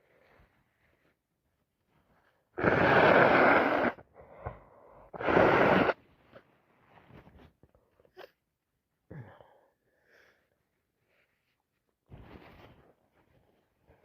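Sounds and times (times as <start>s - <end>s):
person blowing congested nose: 2.6s - 6.0s.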